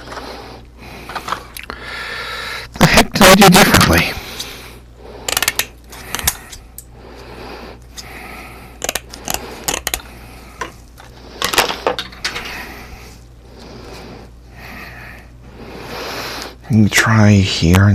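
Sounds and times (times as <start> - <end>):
steady low hum: 0.0 - 17.9
small hard objects clicking: 5.3 - 6.9, 8.8 - 12.4.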